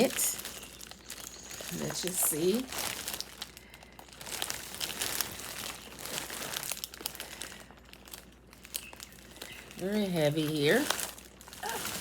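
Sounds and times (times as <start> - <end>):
packaging crinkling: 0.0 - 12.0.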